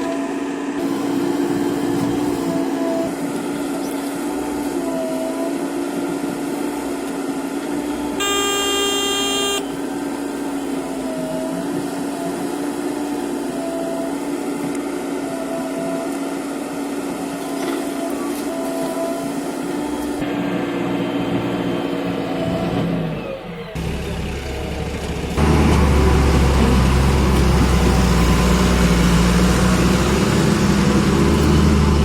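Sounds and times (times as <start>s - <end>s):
diesel engine running: 0.0s - 32.0s
vehicle horn: 8.2s - 9.8s.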